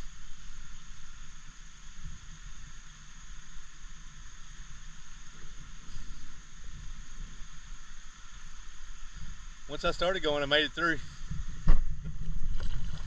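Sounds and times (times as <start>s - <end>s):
wind buffeting microphone: 11.0s - 13.0s.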